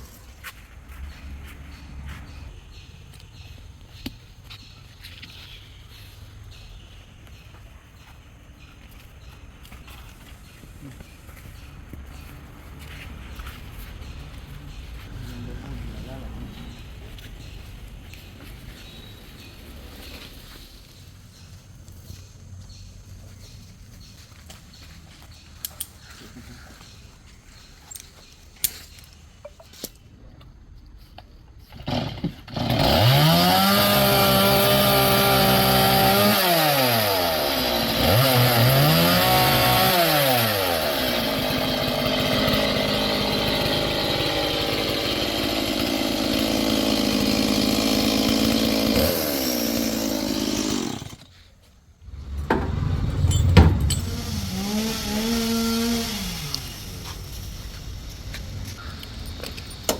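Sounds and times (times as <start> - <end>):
chainsaw revving: 31.8 - 51.3, 52.0 - 58.3
loud knock: 52.2 - 54.1.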